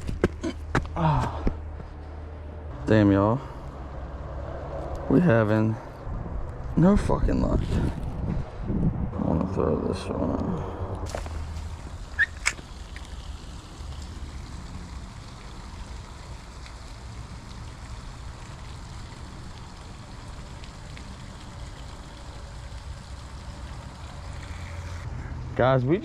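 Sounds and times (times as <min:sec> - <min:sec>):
water rushing: 0:11.0 - 0:25.1.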